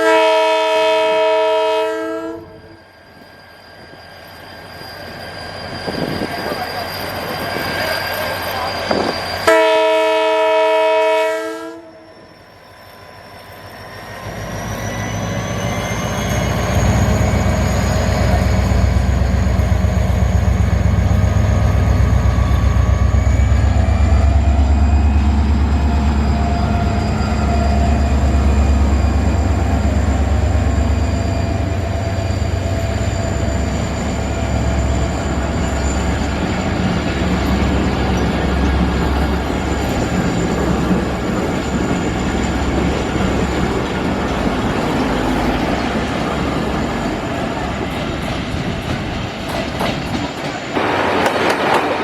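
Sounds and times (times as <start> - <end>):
train horn blast: 0.0 - 2.8, 9.4 - 12.1
train rumbling past: 0.0 - 52.0.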